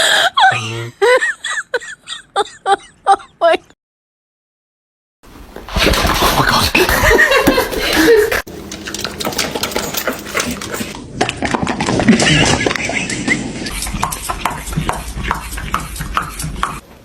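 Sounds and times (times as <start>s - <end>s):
dog vocalizing: 9.7s - 16.8s.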